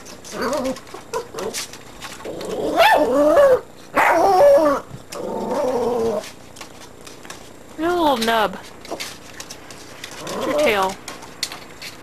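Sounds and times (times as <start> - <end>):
young dog barking: 4.0 - 4.3.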